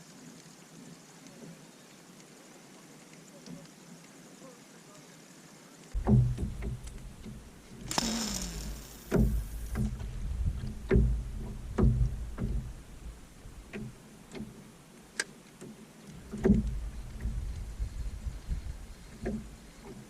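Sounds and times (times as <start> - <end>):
water noise: 0.0 - 20.0
paddle knocking canoe hull: 6.0 - 8.0, 8.6 - 14.6, 15.6 - 17.4, 19.2 - 20.0.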